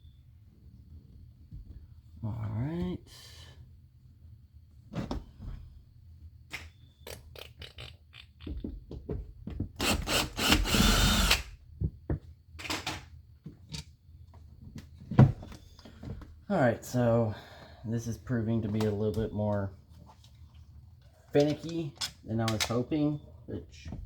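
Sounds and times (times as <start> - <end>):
power drill spinning: 9.8 - 11.5
clicks and knocks of handling parts: 12.1 - 13.9, 21.0 - 23.0.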